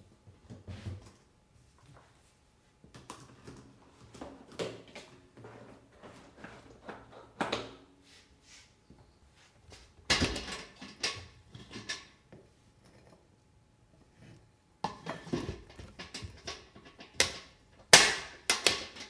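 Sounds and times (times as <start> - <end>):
handling knocks and clatters: 14.8 - 19.0.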